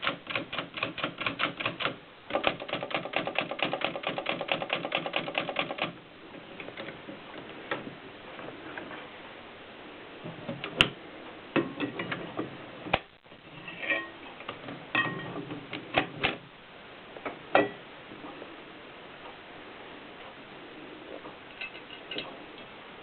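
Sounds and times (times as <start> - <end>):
typewriter mechanism clicking: 0.0 - 6.0.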